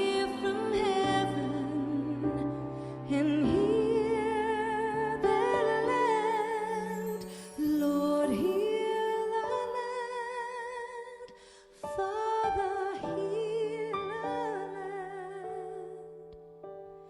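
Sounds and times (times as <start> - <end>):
person singing with vibrato: 0.0 - 16.2.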